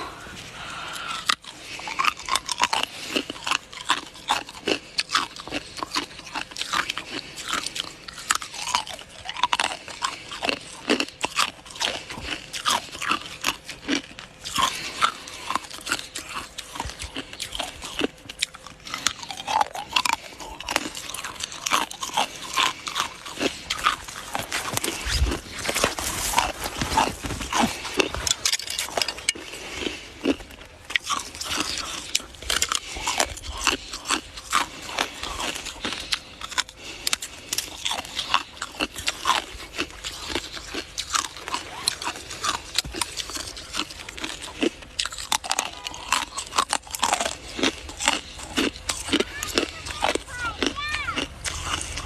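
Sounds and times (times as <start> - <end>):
person crunching ice: 0.0 - 52.0.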